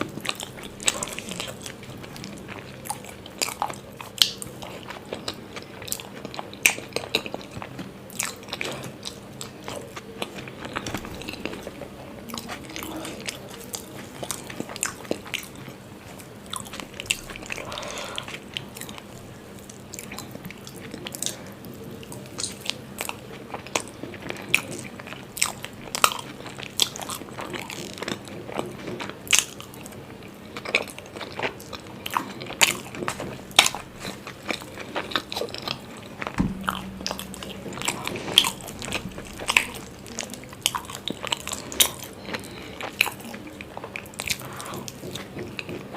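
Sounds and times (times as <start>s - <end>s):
faint steady hum: 0.0s - 45.9s
person chewing food: 0.1s - 21.4s, 38.4s - 45.9s.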